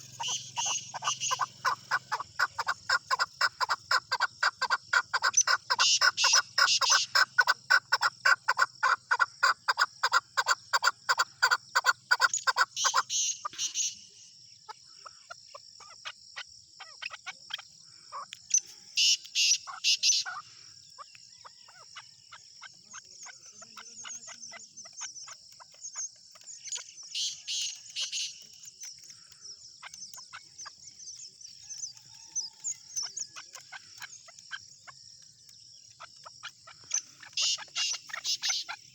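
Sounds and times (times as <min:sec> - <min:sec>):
partridge calling: 0:00.0 - 0:38.9.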